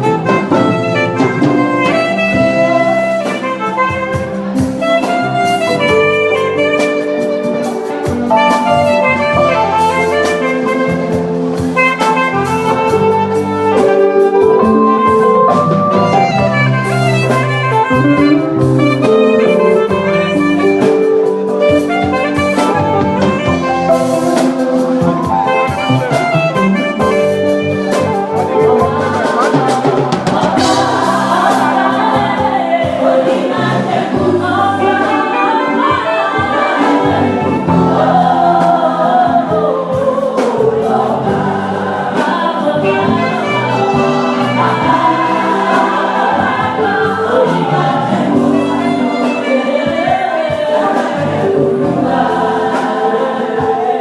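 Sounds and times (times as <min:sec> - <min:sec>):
church choir singing: 0:00.0 - 0:54.0
instrumental accompaniment: 0:00.0 - 0:54.0.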